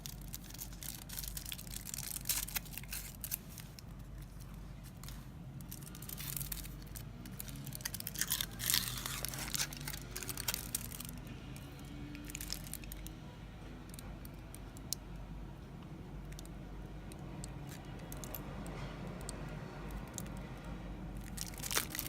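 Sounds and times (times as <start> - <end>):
wrapper tearing and crinkling: 0.0 - 13.2, 21.2 - 22.0.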